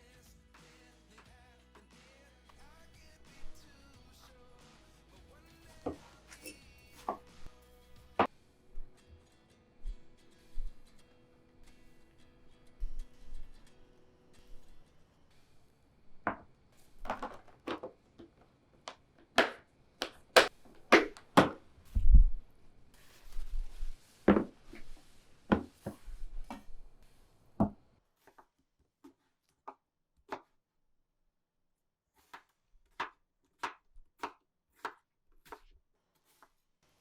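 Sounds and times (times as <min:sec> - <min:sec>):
knife chopping on cutting board: 0:19.4 - 0:21.6, 0:32.2 - 0:36.5.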